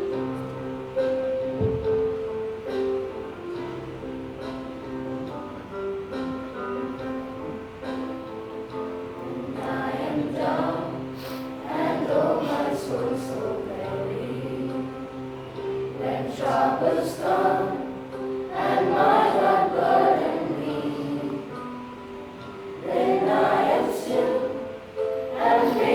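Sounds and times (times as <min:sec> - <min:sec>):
students singing as a choir: 0:09.1 - 0:25.9.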